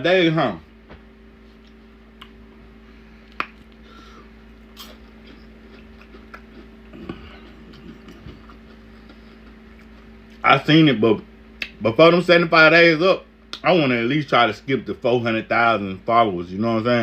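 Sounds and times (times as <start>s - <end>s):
faint low hum: 0.0s - 17.0s
chewing and mouth sounds: 1.6s - 2.4s, 3.2s - 10.4s.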